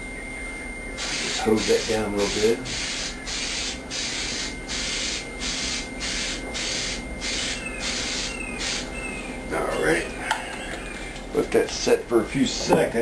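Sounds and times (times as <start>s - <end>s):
aerosol can spraying: 1.0s - 8.9s.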